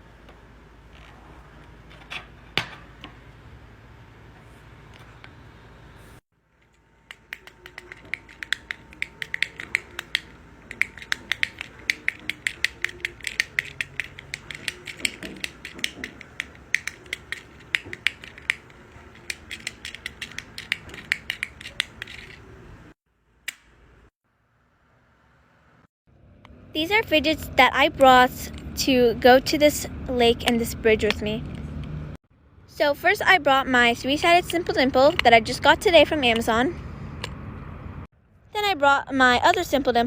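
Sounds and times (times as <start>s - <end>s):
fidget toy clicking: 6.6s - 22.5s.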